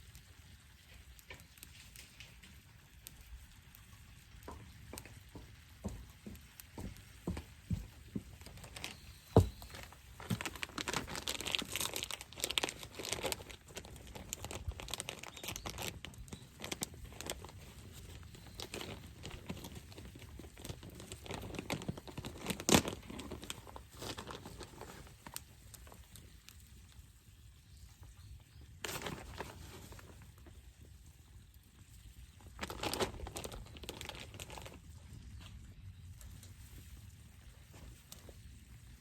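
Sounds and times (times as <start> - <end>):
crinkly wrapping crumpled and torn: 8.4 - 26.7, 28.8 - 30.6, 32.4 - 35.6.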